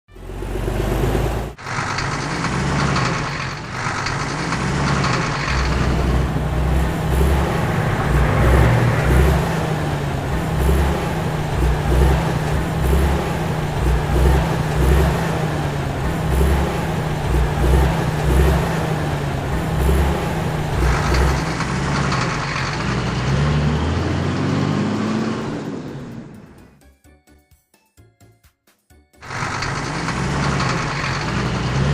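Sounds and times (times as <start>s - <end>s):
truck engine rumbling: 0.0s - 26.8s, 29.2s - 31.9s.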